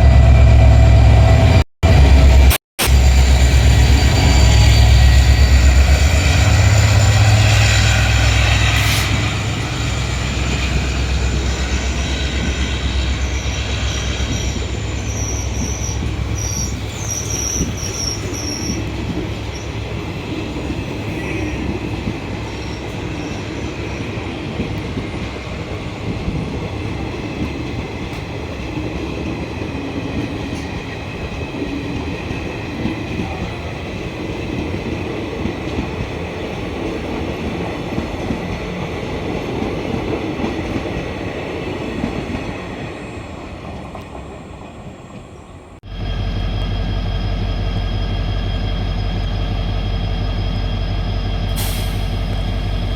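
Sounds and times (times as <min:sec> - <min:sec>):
diesel locomotive engine hum: 0:00.0 - 0:52.9
train coaches rumbling past: 0:00.0 - 0:52.9
high wheel squeals: 0:02.2 - 0:24.2.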